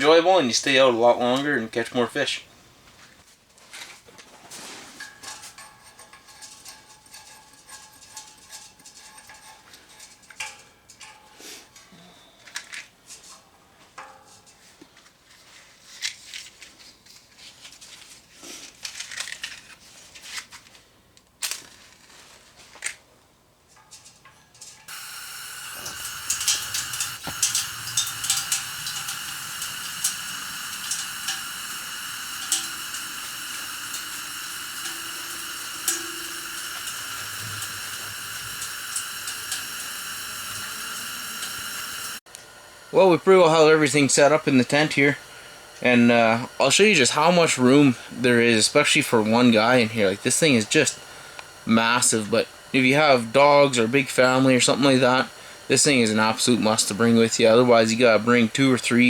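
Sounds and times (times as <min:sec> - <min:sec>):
steady hiss: 0:24.6 - 0:59.0.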